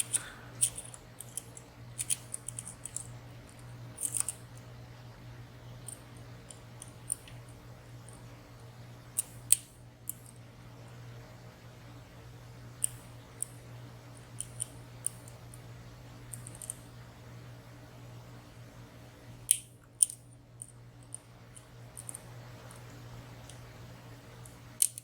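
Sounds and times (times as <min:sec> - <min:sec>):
lock picks clicking in padlock: 0:00.0 - 0:03.1, 0:24.8 - 0:25.0
steady low hum: 0:00.0 - 0:25.0.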